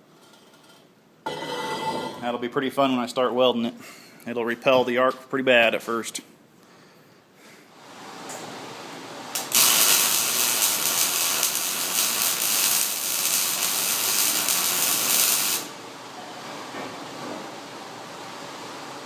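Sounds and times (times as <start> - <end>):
welder arc crackling: 9.3 - 15.8.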